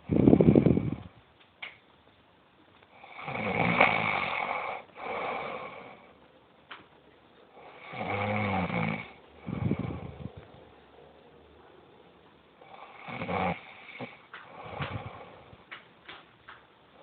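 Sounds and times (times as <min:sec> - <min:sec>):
loud snoring: 0:03.0 - 0:06.0, 0:07.6 - 0:10.3, 0:12.6 - 0:15.3.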